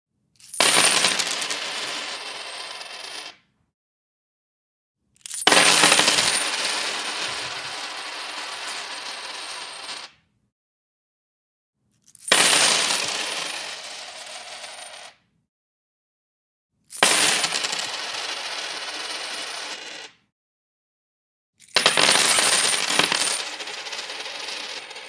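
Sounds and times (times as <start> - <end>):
coins spilling onto wooden table: 5.2 - 10.1, 12.0 - 15.1, 16.9 - 20.1, 21.6 - 25.0.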